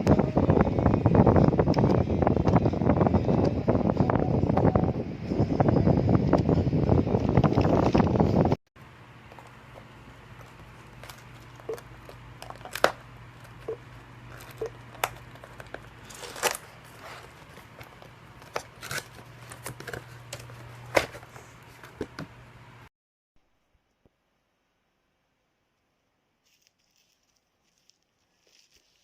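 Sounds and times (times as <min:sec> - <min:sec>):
steady low hum: 0:00.0 - 0:22.9
packaging crinkling and tearing: 0:10.4 - 0:21.1, 0:26.4 - 0:29.0.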